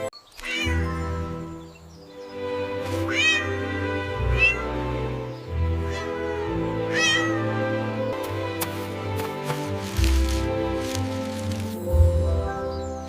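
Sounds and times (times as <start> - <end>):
background music: 0.0 - 13.0
cartoon cat meowing: 0.4 - 1.2, 3.0 - 4.8, 6.8 - 7.6.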